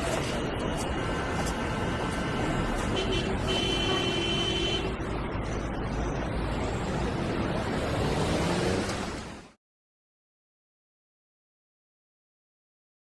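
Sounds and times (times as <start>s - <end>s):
road traffic: 0.0s - 9.6s.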